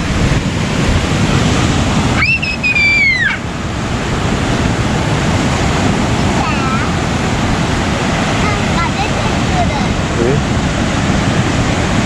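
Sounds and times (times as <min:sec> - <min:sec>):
surf breaking on beach: 0:00.0 - 0:12.0
wind on microphone: 0:00.0 - 0:12.0
high-pitched cry: 0:02.2 - 0:03.4.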